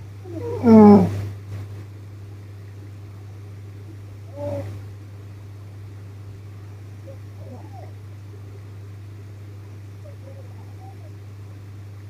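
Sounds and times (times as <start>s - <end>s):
steady low hum: 0.0s - 12.0s
woman's soft nasal hum: 4.3s - 4.9s.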